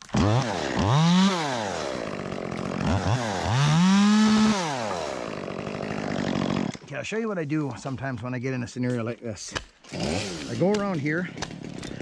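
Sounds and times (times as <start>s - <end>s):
chainsaw engine revving: 0.0s - 6.9s, 9.8s - 12.0s.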